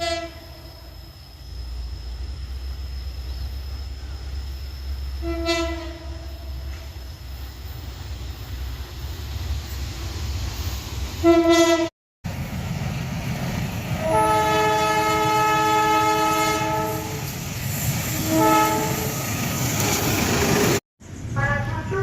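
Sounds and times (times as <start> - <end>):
train horn blasts: 0.0 - 1.0, 5.2 - 6.7, 11.2 - 11.9, 14.0 - 17.2, 18.1 - 19.2.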